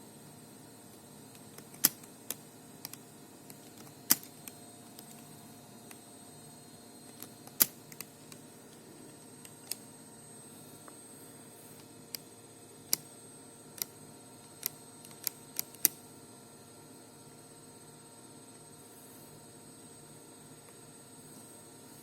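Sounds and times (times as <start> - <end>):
faint steady hum: 0.0 - 22.0
plastic clicks and snaps: 1.3 - 5.3, 7.1 - 8.4, 9.1 - 9.8, 14.6 - 16.0.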